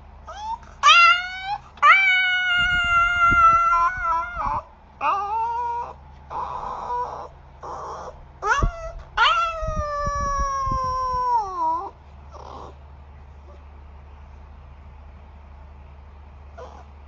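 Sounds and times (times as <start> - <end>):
low hum: 0.0 - 17.0
puppy whimpering and whining: 0.3 - 12.8, 16.6 - 16.9.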